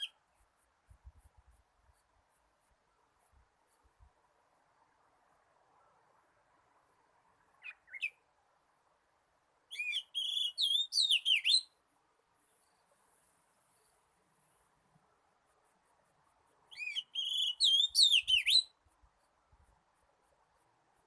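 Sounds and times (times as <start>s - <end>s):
bird singing whistled notes: 0.0s - 0.2s, 7.6s - 8.2s, 9.7s - 11.8s, 16.7s - 18.8s.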